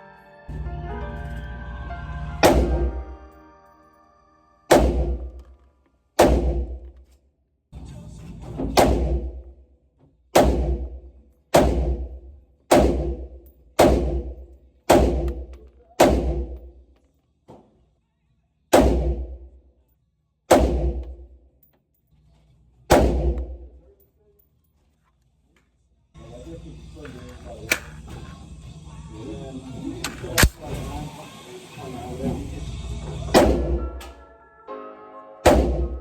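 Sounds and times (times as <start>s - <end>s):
pistol shots: 2.4s - 3.0s, 4.7s - 5.4s, 6.2s - 6.8s, 8.8s - 9.4s, 10.4s - 12.1s, 12.7s - 16.6s, 18.7s - 19.4s, 20.5s - 21.1s, 22.9s - 23.6s, 33.3s - 34.0s, 35.4s - 36.0s.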